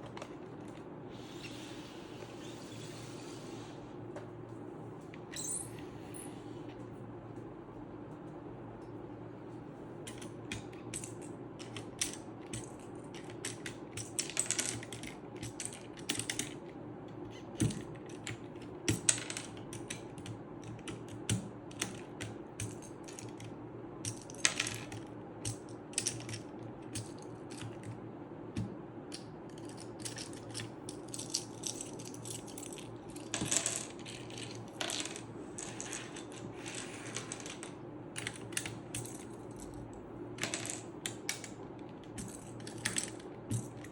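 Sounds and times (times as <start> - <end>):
keycaps clicking and clattering: 0.0 - 0.8, 10.0 - 16.7, 17.5 - 28.0, 28.6 - 43.9.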